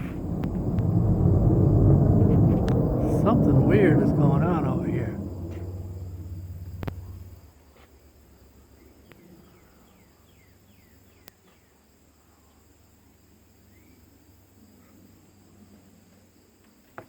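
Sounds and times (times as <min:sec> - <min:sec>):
aircraft rumble overhead: 0:00.0 - 0:07.6.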